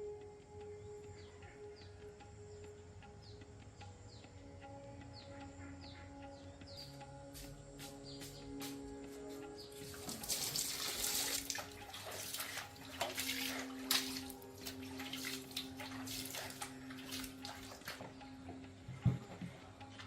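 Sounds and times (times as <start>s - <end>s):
tap water splashing: 9.8s - 18.2s.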